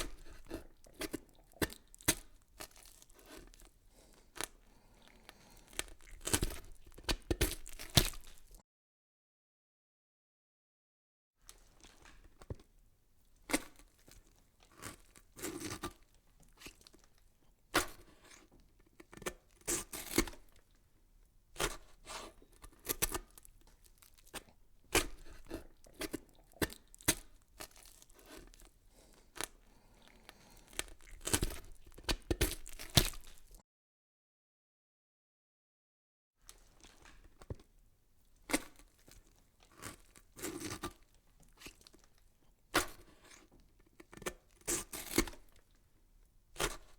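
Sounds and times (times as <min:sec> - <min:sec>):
crackling and tearing noises: 0:00.0 - 0:08.6, 0:17.8 - 0:20.8, 0:21.6 - 0:33.6, 0:38.3 - 0:45.8.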